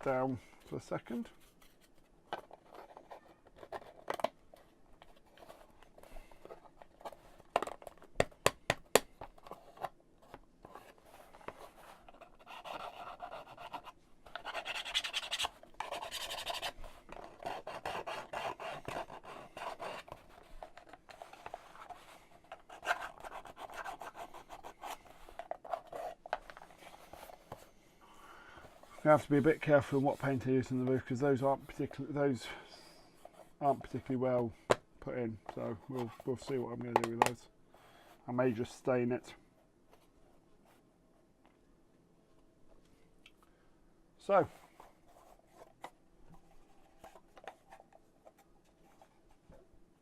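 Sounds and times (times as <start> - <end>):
scratching and rubbing on tabletop: 10.6 - 27.6.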